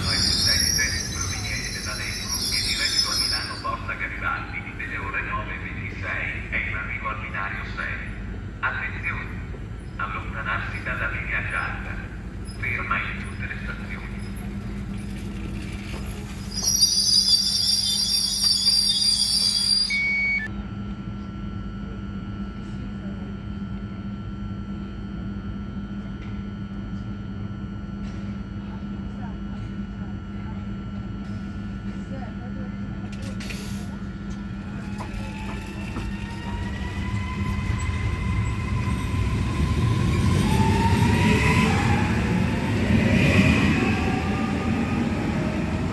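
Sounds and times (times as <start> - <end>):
wheels squealing on rails: 0.0 - 3.9, 14.0 - 20.5, 34.5 - 45.9
electric train humming: 0.0 - 20.5, 31.1 - 45.9
short high beep: 17.8 - 20.5.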